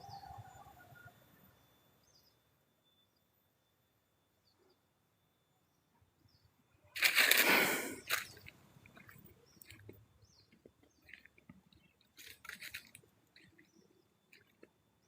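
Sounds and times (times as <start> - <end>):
rustling and crunching: 7.0 - 14.8
small crackles: 7.0 - 14.8.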